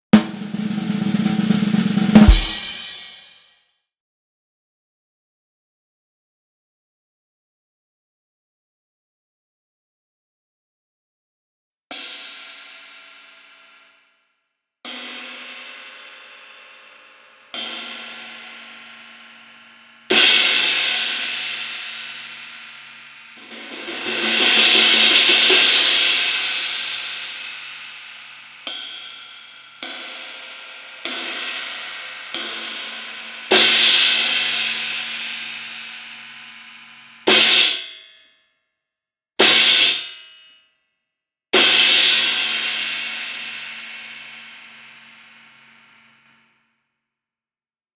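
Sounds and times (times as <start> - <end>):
crash cymbal struck: 0.2 - 3.4, 17.6 - 37.8.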